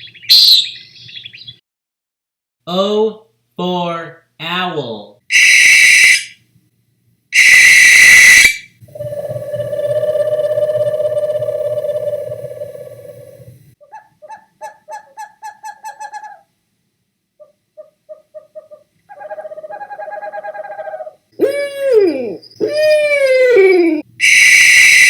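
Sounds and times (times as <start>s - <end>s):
owl hooting: 5.3s - 6.4s, 7.4s - 16.5s, 17.4s - 25.0s.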